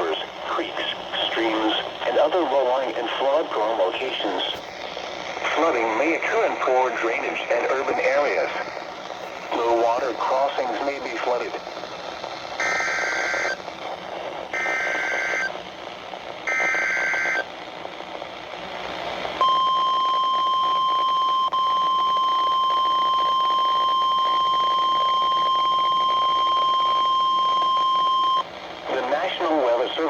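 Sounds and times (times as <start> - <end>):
radio hiss: 0.0 - 15.6, 28.8 - 30.0
two-tone data bursts: 12.6 - 13.6, 14.6 - 15.5, 16.5 - 17.5.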